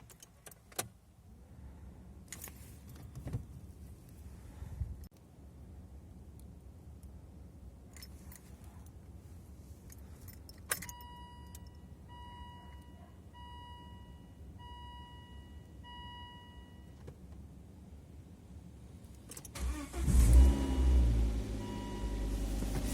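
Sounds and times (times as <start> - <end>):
car keys jingling: 7.9 - 8.6, 9.8 - 11.9
dashboard warning chime: 10.8 - 17.0, 20.4 - 22.9.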